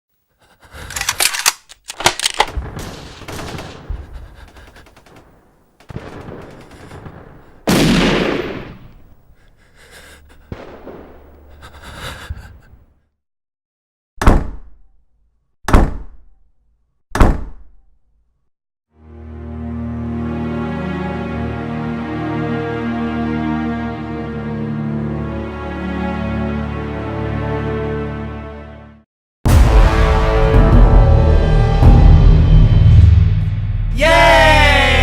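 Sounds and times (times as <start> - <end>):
gunshots and impacts: 1.9 - 9.2
loud blast: 5.9 - 8.9, 29.5 - 34.7.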